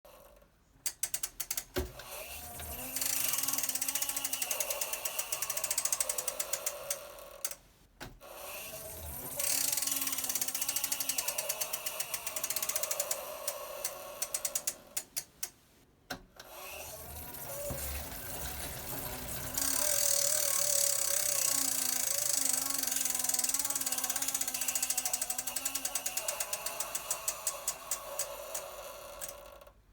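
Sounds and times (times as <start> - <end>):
freewheel ratchet clicks: 0.9 - 1.8, 2.7 - 7.6, 9.4 - 15.6, 16.8 - 29.7
bike trainer humming: 16.8 - 27.8.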